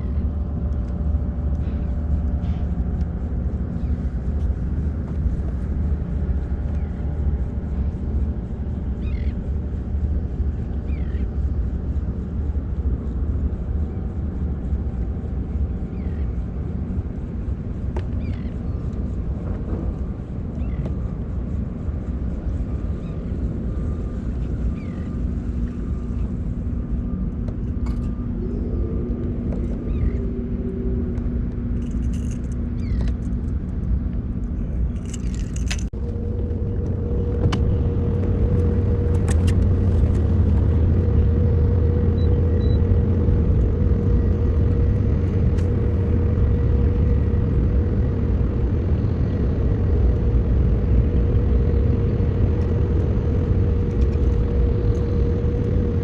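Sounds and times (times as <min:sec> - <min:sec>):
boat motor rumbling: 0:00.0 - 0:56.0
steady higher hum: 0:00.0 - 0:56.0.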